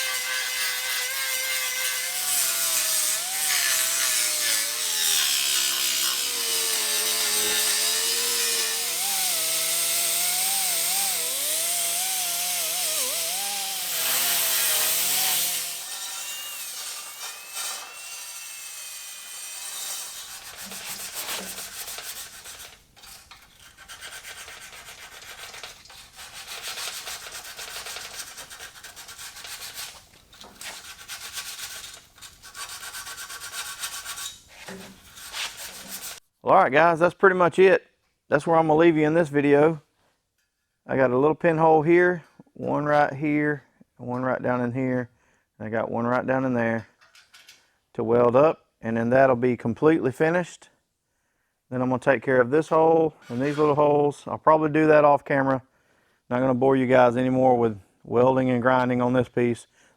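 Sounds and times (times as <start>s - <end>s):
grinder on steel: 0.0s - 36.2s
scraping and rubbing on metal: 19.6s - 36.2s, 53.2s - 54.0s.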